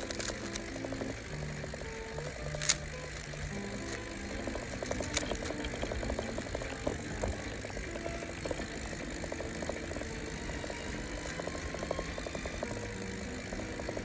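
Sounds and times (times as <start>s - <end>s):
low road rumble: 0.0s - 14.0s.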